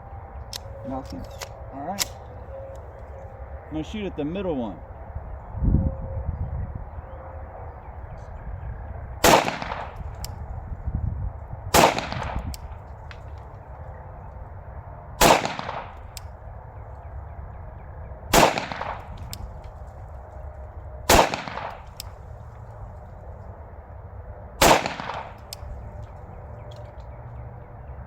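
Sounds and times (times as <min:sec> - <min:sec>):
pistol shots echoing: 0:09.2 - 0:10.3, 0:11.7 - 0:13.4, 0:15.2 - 0:16.2, 0:18.3 - 0:19.6, 0:21.1 - 0:22.2, 0:24.6 - 0:25.9.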